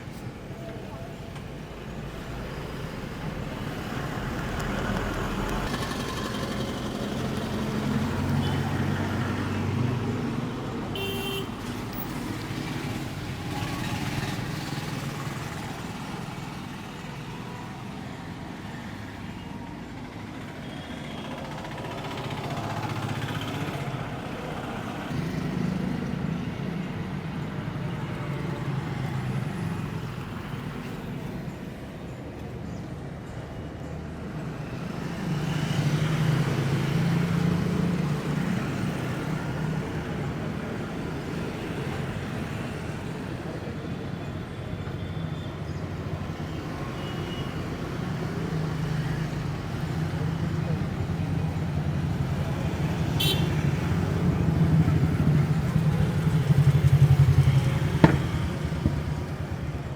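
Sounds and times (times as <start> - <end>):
street traffic passing: 0.0 - 59.9
car horn toot: 11.0 - 11.5, 53.2 - 53.6.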